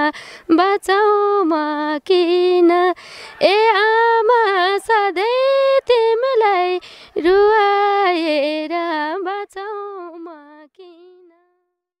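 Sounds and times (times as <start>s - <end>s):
woman singing unaccompanied: 0.0s - 11.4s
woman breathing: 0.1s - 0.5s, 3.0s - 3.4s, 6.8s - 7.2s.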